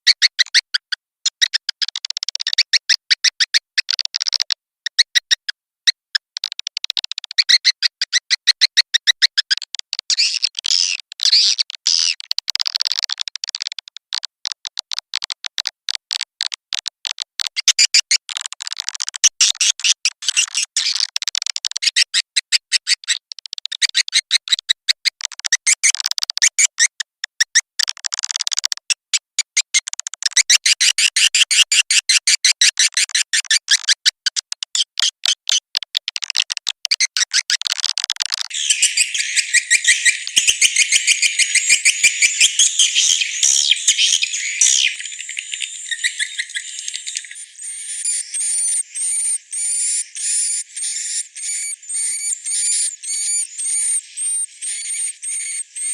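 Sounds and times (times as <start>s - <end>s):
recorded swiftlet chirps: 38.5s - 55.9s.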